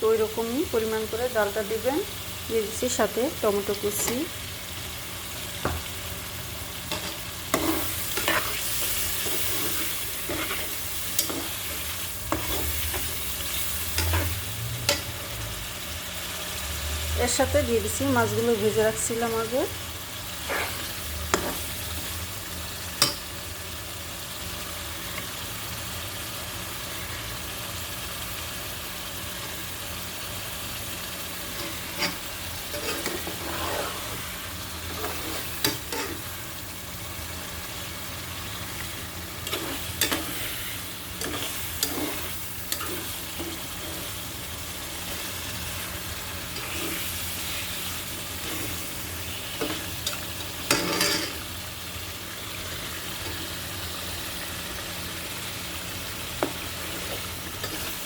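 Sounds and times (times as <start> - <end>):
food sizzling in oil: 0.0 - 58.0
spatula scraping a pan: 6.9 - 15.3, 20.3 - 21.9, 31.4 - 36.4, 38.6 - 51.4, 56.4 - 58.0.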